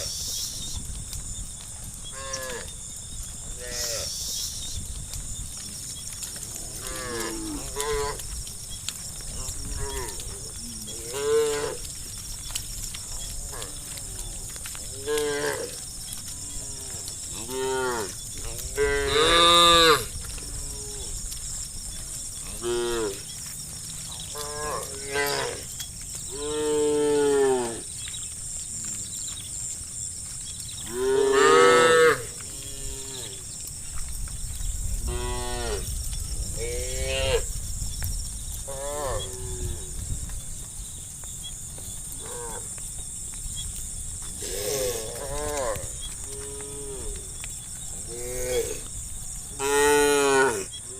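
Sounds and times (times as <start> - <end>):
cows mooing: 6.4 - 8.3, 9.3 - 11.9, 13.2 - 21.1, 24.2 - 27.9, 30.8 - 33.4, 49.6 - 50.8.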